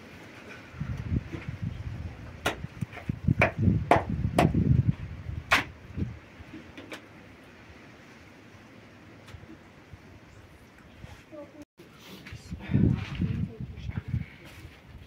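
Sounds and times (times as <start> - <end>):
sharp knocks: 3.4 - 4.6.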